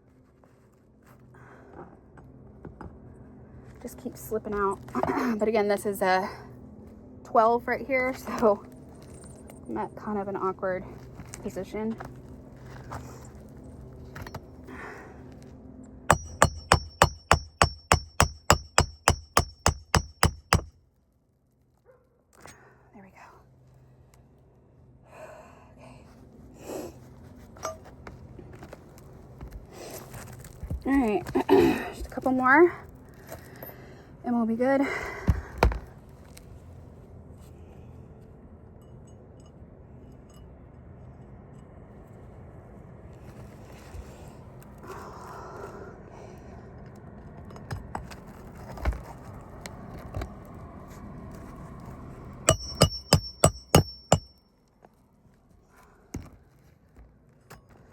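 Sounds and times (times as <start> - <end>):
hammer striking metal with ring: 16.1 - 20.7, 52.5 - 54.4.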